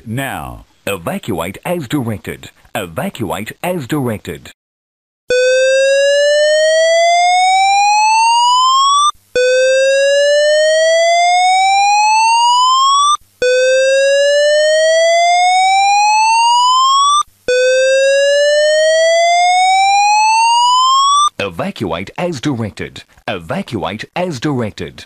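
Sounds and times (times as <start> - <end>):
fire alarm whoop tone: 5.3 - 21.3.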